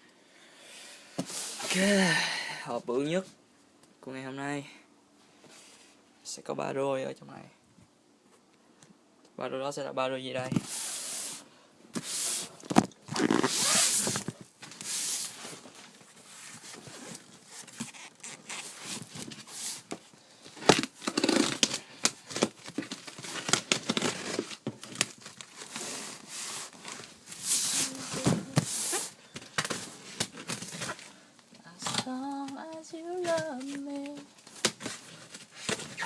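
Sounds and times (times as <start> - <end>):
packaging tearing and crumpling: 20.7 - 26.2.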